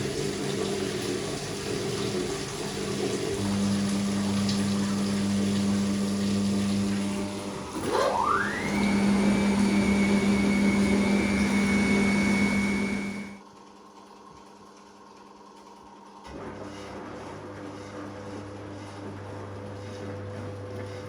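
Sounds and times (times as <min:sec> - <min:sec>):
drain pump humming: 0:00.0 - 0:13.4
washing machine drum spinning whine: 0:00.0 - 0:21.0.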